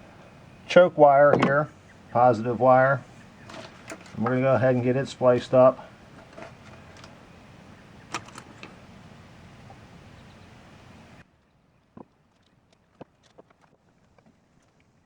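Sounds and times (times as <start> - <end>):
steady background hiss: 0.0 - 11.3.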